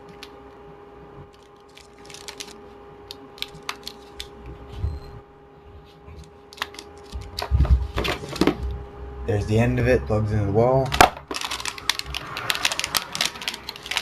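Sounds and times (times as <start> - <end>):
faint steady hum: 0.0 - 14.0
cord and packaging rustling: 1.3 - 4.8, 6.1 - 8.7, 10.9 - 14.0.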